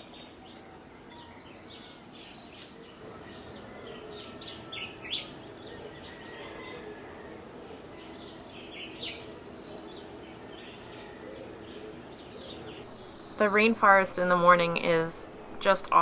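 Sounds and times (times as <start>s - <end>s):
birds chirping: 0.0s - 16.0s
high insect drone: 0.0s - 16.0s.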